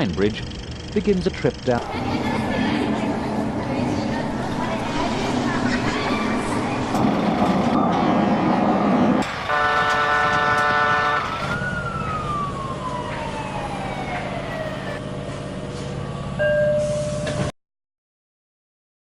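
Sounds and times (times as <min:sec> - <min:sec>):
loud steady horn tone: 0:09.2 - 0:11.6
horn sounding a chord: 0:09.3 - 0:11.4
siren-like tone falling: 0:10.1 - 0:15.1.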